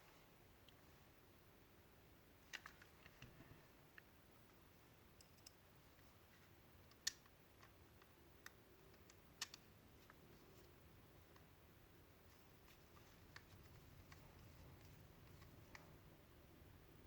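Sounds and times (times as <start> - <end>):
small clicks and taps of parts: 2.5 - 4.6, 5.2 - 6.1, 6.8 - 11.5.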